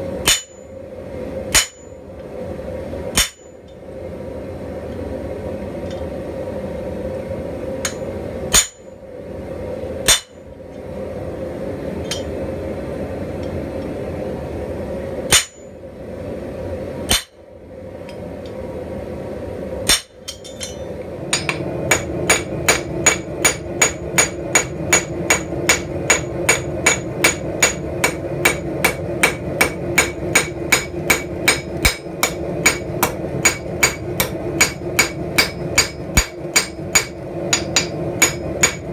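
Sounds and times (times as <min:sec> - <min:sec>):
hammer striking steel on anvil: 0:00.2 - 0:00.7, 0:01.5 - 0:02.0, 0:03.2 - 0:03.6, 0:07.8 - 0:08.9, 0:10.1 - 0:10.4, 0:12.1 - 0:12.3, 0:15.3 - 0:15.7, 0:17.1 - 0:17.4, 0:19.9 - 0:38.9.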